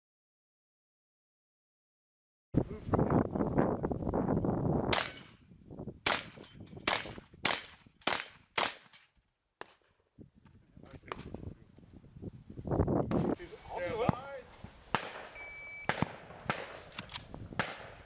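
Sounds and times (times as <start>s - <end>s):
shotgun shots with echo: 4.9s - 5.3s, 6.0s - 9.0s, 14.9s - 17.0s, 17.6s - 18.0s
rustling on microphone: 10.4s - 14.8s.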